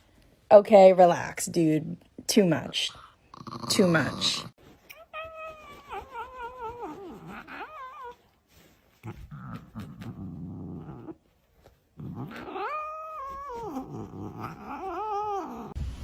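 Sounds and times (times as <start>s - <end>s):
cat growling: 3.2s - 4.5s, 5.2s - 8.2s, 9.0s - 15.8s
cat yowling: 12.3s - 15.8s.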